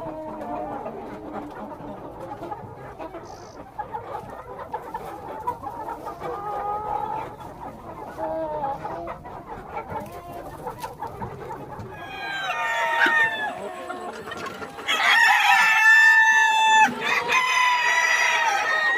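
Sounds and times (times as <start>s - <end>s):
chickens clucking: 0.0s - 18.9s.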